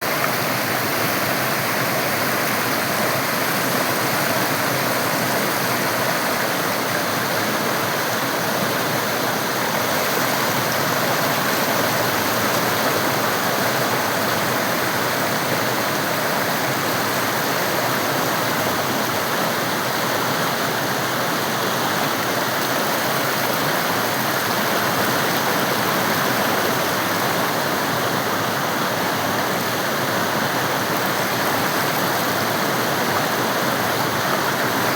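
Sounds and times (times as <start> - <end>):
river water flowing: 0.0 - 34.9.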